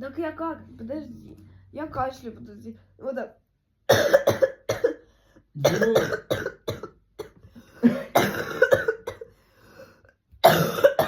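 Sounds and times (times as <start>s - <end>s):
person coughing: 3.9s - 5.0s, 5.6s - 9.4s, 10.4s - 11.0s.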